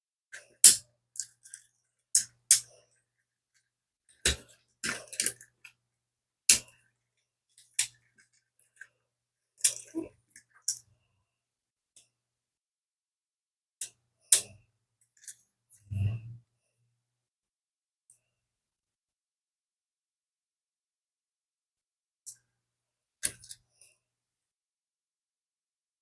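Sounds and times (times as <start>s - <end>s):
plastic toy parts clicking: 0.6s - 2.7s.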